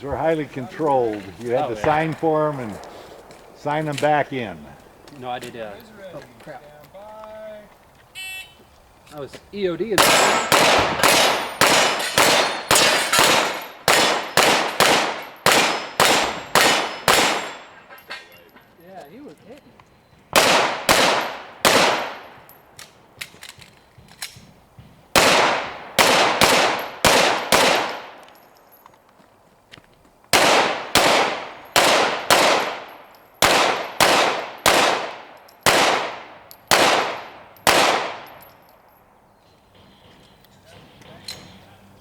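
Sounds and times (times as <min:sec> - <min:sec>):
pistol shots: 0:01.8 - 0:04.5, 0:09.9 - 0:17.8, 0:20.3 - 0:22.5, 0:25.1 - 0:28.4, 0:30.3 - 0:38.5.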